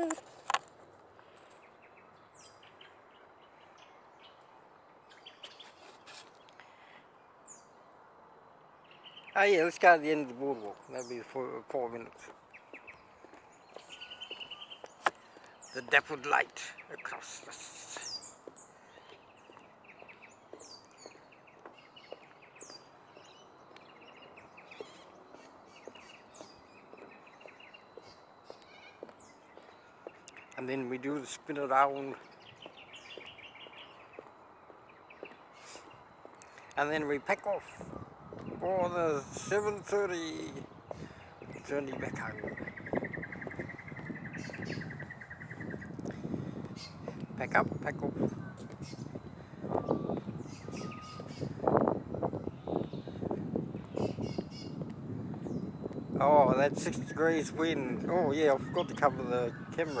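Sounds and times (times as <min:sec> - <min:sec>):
faint bird chirps: 0:01.3 - 0:07.8, 0:12.5 - 0:16.0, 0:16.6 - 0:38.6, 0:46.8 - 0:51.6.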